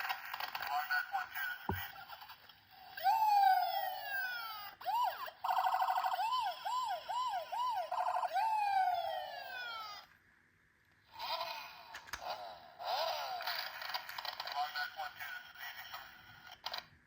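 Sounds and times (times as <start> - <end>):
toy electronic siren: 4.8 - 10.0.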